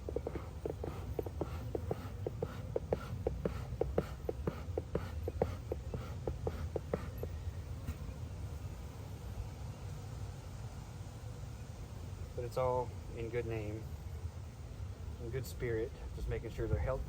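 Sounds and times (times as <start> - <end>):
scraping beeswax off wood: 0.0 - 8.0.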